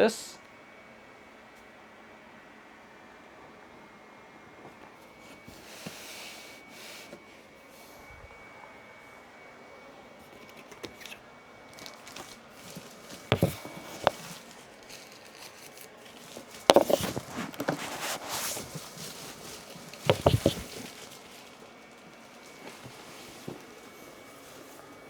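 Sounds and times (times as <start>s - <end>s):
packing material rustling: 10.4s - 23.9s
sharp knocks on packaging: 13.3s - 14.3s, 20.0s - 20.9s.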